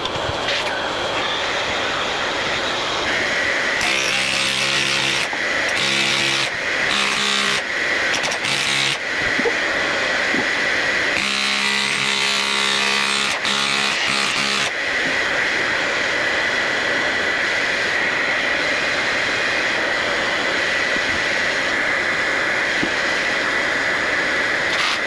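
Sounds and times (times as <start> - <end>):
dust extractor whining: 1.2 - 25.0
power tools cutting wall: 2.8 - 16.3, 22.6 - 25.0.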